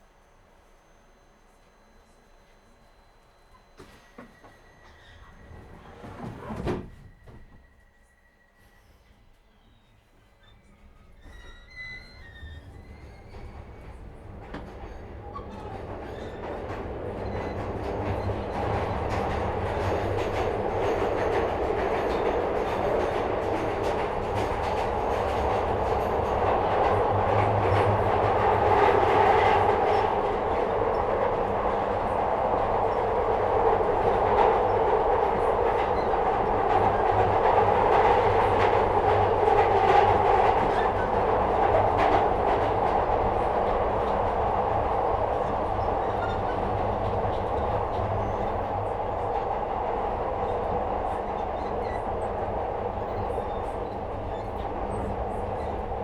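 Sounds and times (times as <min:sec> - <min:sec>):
train wheels rumbling on rail: 0:03.6 - 0:56.0
rail clicks: 0:12.2 - 0:56.0.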